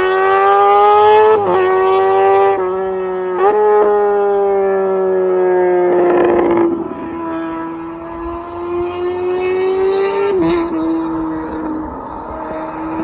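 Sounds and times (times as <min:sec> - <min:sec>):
motorcycle engine revving high: 0:00.0 - 0:04.4.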